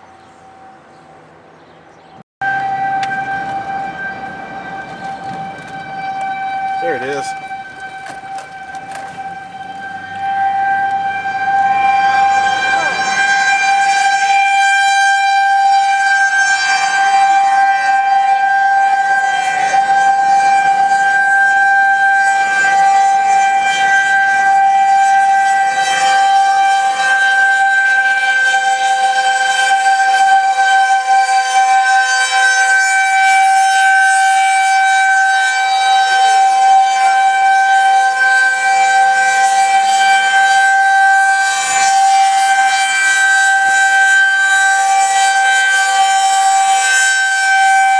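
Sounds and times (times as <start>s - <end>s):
warning siren steady tone: 0.0s - 47.9s.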